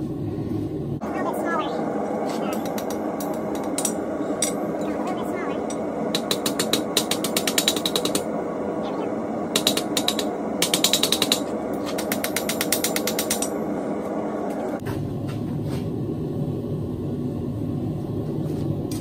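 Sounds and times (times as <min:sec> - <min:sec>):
low rumbling noise: 0:00.0 - 0:07.2, 0:13.4 - 0:19.0.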